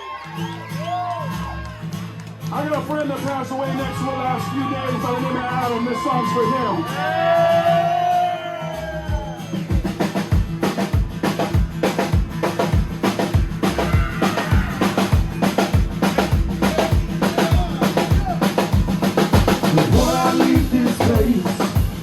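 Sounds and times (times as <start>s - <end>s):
drum kit beat: 9.0s - 22.0s
sustained bass line: 9.8s - 22.0s.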